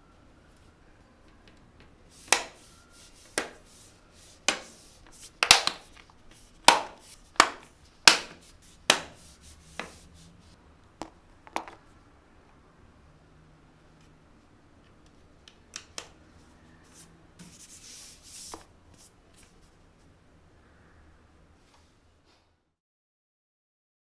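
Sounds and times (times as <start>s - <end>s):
clicks and knocks on laptop casing: 2.2s - 2.7s, 3.3s - 3.7s, 4.4s - 4.8s, 5.4s - 6.1s, 6.7s - 9.2s.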